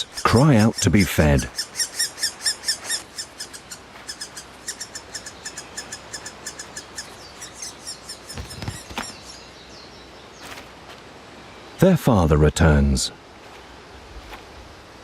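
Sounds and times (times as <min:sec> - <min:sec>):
woodpecker chicks chirping: 0:00.0 - 0:10.6.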